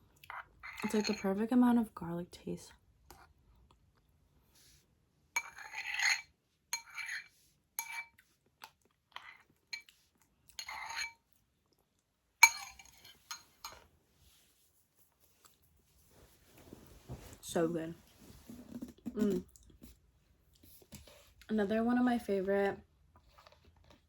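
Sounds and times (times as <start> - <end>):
metal utensil scraping a dish: 0.6 - 1.3, 5.4 - 8.2, 10.6 - 11.2.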